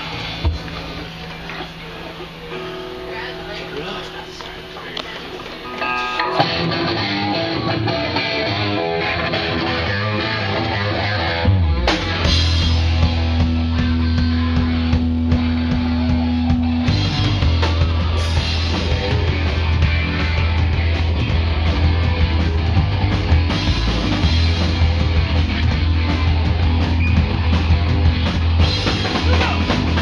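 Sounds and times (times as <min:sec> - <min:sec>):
punk rock band playing: 0:00.0 - 0:30.0.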